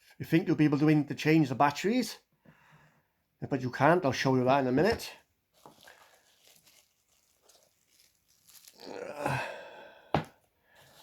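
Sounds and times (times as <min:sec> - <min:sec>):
packaging rustling and crinkling: 0:05.5 - 0:09.4, 0:10.2 - 0:11.0.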